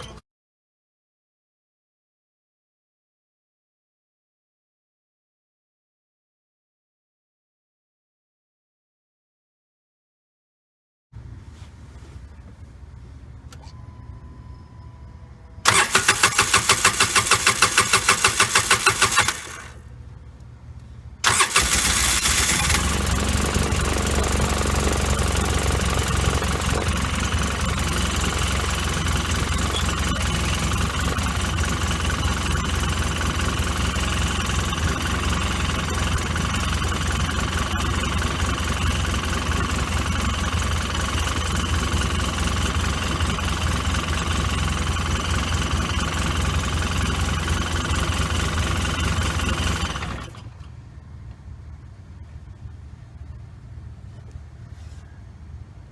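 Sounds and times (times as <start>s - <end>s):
engine cranking on starter: 15.6s - 19.9s, 21.2s - 50.9s
engine idling roughly: 15.6s - 19.9s, 21.2s - 50.8s.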